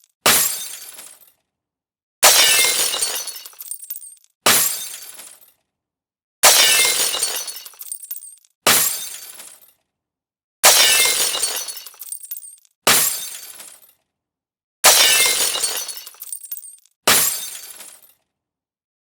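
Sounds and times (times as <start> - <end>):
window glass shattering: 2.2 - 5.1, 6.4 - 9.3, 10.6 - 13.6, 14.8 - 18.0
glass fragments tinkling: 2.3 - 5.3, 6.5 - 9.4, 10.7 - 13.8, 14.9 - 18.1.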